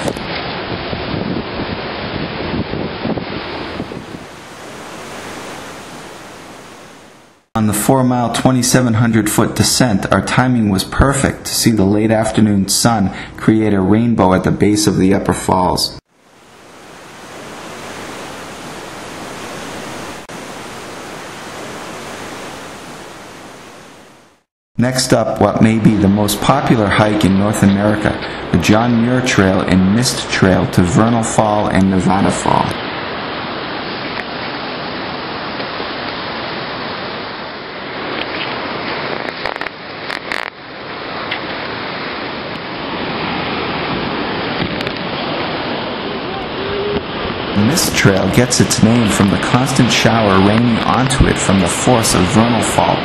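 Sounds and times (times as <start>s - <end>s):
waterfall roaring: 1.5s - 7.4s, 16.2s - 24.4s, 25.6s - 53.0s.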